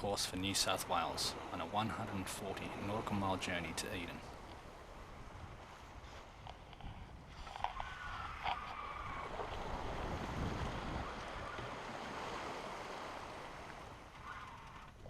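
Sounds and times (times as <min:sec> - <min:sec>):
water washing past a boat hull: 0:00.0 - 0:15.0
wind on microphone: 0:04.4 - 0:14.0.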